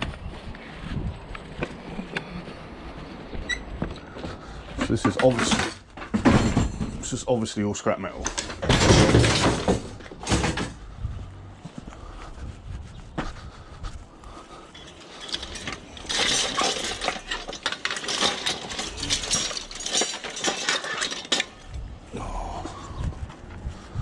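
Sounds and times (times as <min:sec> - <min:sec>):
scrap metal clanking: 0:04.7 - 0:07.2, 0:08.2 - 0:10.8, 0:14.7 - 0:21.8.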